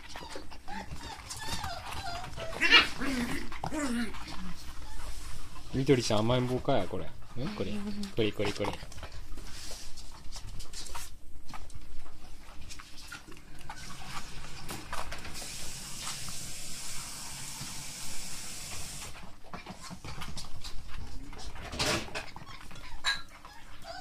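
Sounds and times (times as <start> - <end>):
puppy claws clicking and scrabbling: 19.2 - 24.0.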